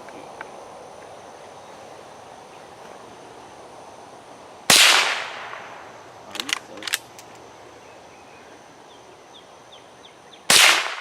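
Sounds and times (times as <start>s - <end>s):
rifle shot: 4.7s - 5.8s, 10.5s - 11.0s.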